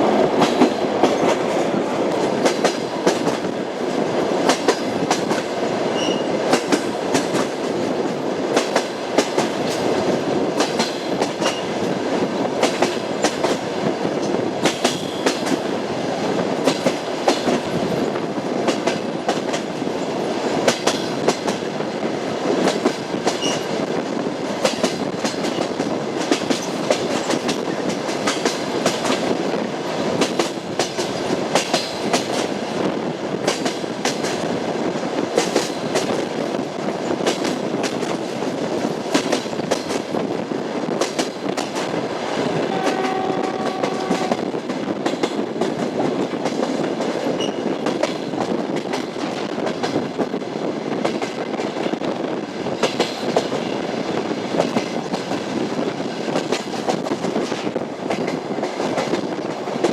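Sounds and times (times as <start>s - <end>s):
train wheels clacking on rail joints: 0.0s - 59.9s
faint short squeaks: 6.0s - 6.3s.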